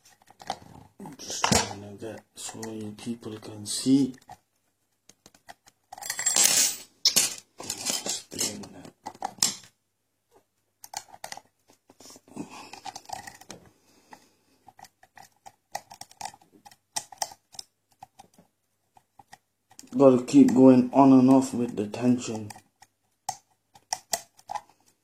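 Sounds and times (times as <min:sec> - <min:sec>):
lock pick scraping and clicking: 0:22.4 - 0:24.9.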